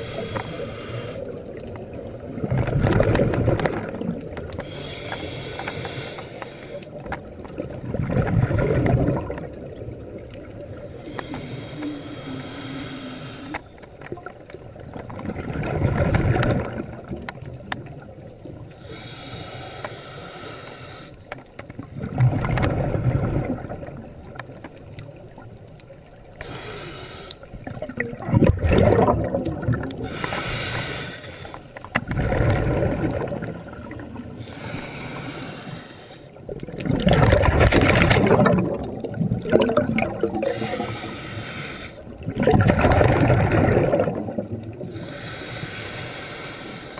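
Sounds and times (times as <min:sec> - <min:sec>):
regulator inhale hiss: 0:00.0 - 0:01.4, 0:04.6 - 0:07.0, 0:10.9 - 0:13.7, 0:18.7 - 0:21.4, 0:26.4 - 0:27.6, 0:30.0 - 0:31.9, 0:34.3 - 0:36.5, 0:40.4 - 0:42.2, 0:44.8 - 0:46.9
diver exhaling bubbles: 0:07.5 - 0:10.2, 0:15.1 - 0:17.2, 0:21.9 - 0:24.1, 0:27.6 - 0:30.5, 0:32.0 - 0:35.8, 0:36.5 - 0:41.3, 0:42.0 - 0:45.5.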